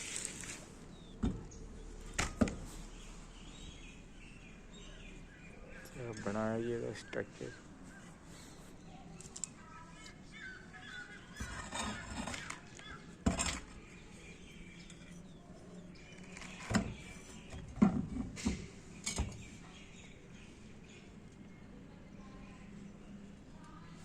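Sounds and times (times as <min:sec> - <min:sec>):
faint bird chirps: 0:00.9 - 0:17.8
sharp knocks and clatter: 0:11.4 - 0:13.8.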